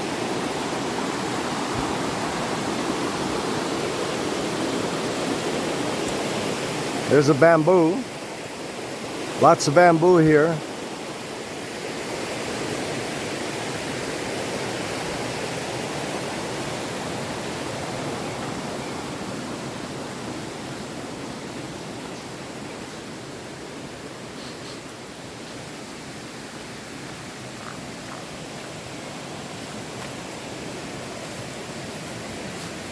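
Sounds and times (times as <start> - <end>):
river rushing over rocks: 0.0 - 7.1, 7.8 - 32.9.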